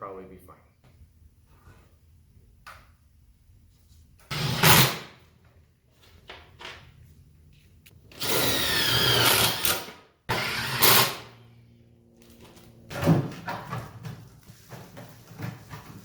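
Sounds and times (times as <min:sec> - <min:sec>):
power drill whining: 0:04.3 - 0:05.1, 0:08.1 - 0:11.4.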